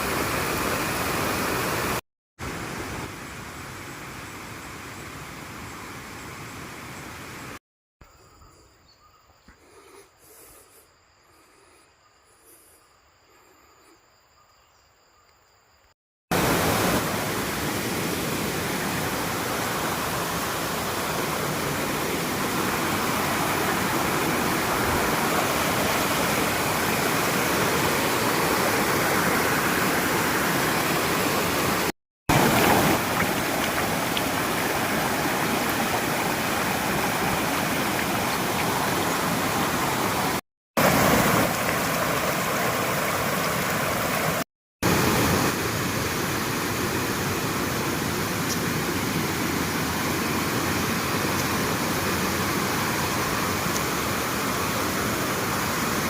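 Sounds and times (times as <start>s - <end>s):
waterfall rushing: 16.3s - 56.0s.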